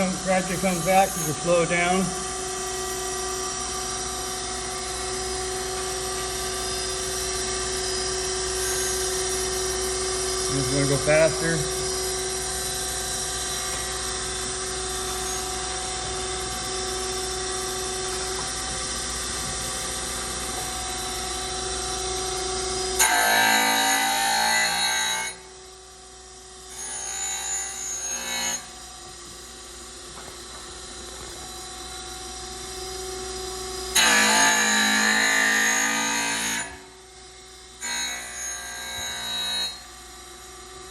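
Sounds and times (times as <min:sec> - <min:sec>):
surface grinder humming: 0:00.0 - 0:02.0.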